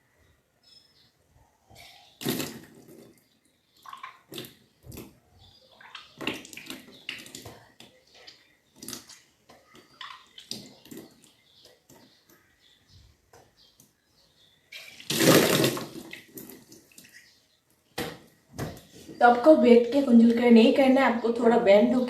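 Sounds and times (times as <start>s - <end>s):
person retching: 14.9s - 16.0s
water gushing and splashing: 14.9s - 17.0s.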